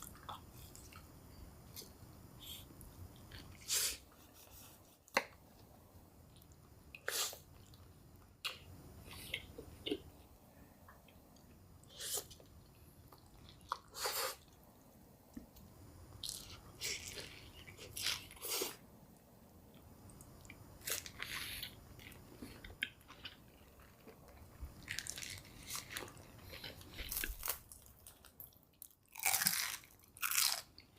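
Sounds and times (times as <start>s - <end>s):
person chewing crunchy food: 20.4s - 30.9s.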